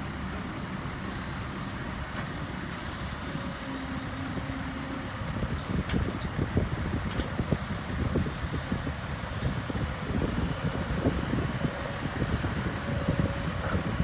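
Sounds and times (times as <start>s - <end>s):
diesel engine rumbling: 0.0s - 14.0s
wind buffeting microphone: 4.4s - 14.0s.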